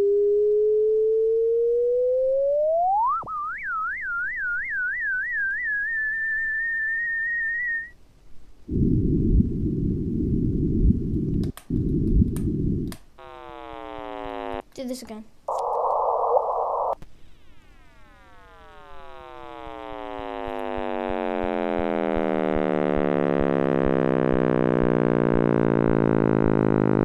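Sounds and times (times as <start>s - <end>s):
electronic whistle-like tone: 0.0s - 8.0s, 15.6s - 26.7s
falling electronic chirps: 0.0s - 8.0s, 13.2s - 14.6s, 15.5s - 27.0s
low rumbling noise: 8.6s - 14.4s, 19.3s - 27.0s.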